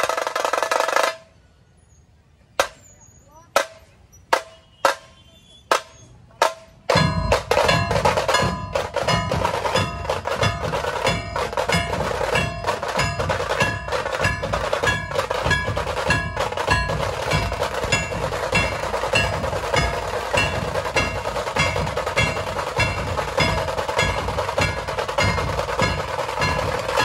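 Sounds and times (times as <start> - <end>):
fast rattling drum rolls: 0.0 - 1.3, 6.4 - 27.0
heavy drum beats: 5.7 - 27.0.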